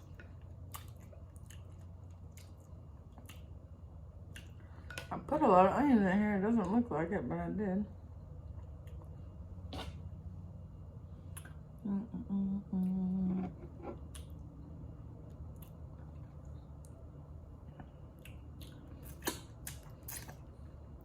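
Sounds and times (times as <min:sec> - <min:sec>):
woman humming appreciatively: 0:11.8 - 0:13.5.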